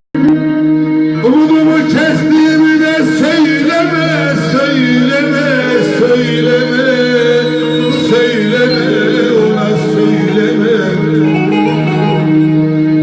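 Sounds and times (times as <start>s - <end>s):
ornamented folk melody: 0.2s - 13.0s.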